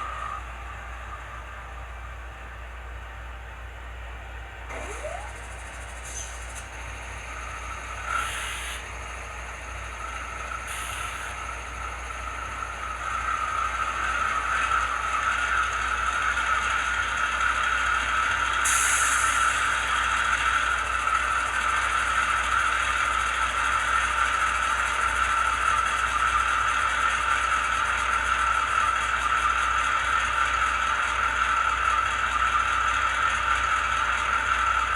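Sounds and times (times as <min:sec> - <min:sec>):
diesel engine tone from small speaker: 0:04.7 - 0:18.2.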